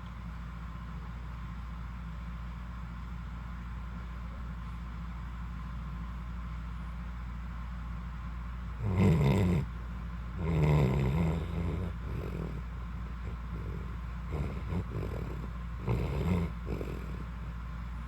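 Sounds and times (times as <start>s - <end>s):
steady low hum: 0.0s - 18.0s
dog snore-growling: 8.8s - 17.4s.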